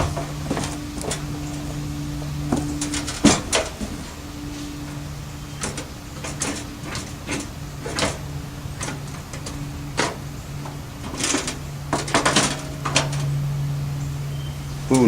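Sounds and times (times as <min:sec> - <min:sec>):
steady low hum: 0:00.0 - 0:15.0
sheet metal clicks and clacks: 0:05.6 - 0:13.4.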